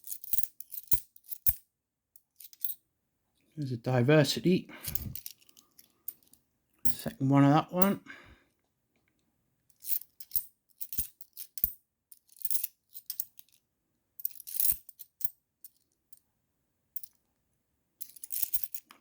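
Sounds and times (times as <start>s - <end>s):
coins clinking and jingling: 0.0s - 1.6s, 4.9s - 6.3s, 9.8s - 13.5s, 14.2s - 15.8s, 18.0s - 18.9s.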